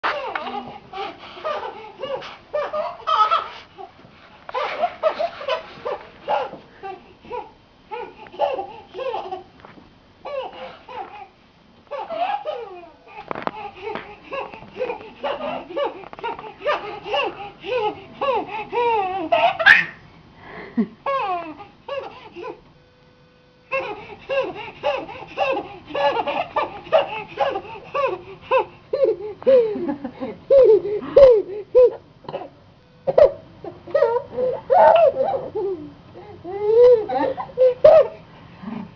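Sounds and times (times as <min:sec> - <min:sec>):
baby laughing: 0:00.0 - 0:03.6, 0:11.9 - 0:12.9, 0:13.8 - 0:20.0, 0:23.7 - 0:29.7, 0:30.5 - 0:32.0, 0:33.2 - 0:38.2.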